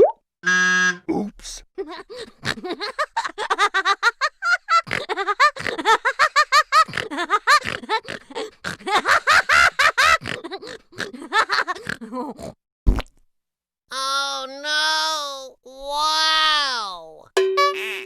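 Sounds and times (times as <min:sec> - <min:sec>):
cartoon giggling and chuckling: 0:01.8 - 0:12.5.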